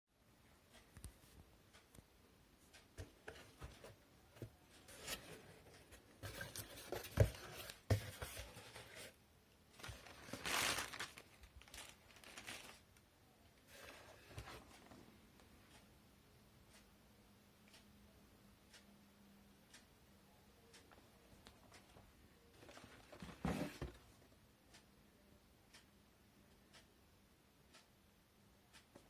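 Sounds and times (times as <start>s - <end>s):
cardboard packaging tearing: 10.1s - 12.8s.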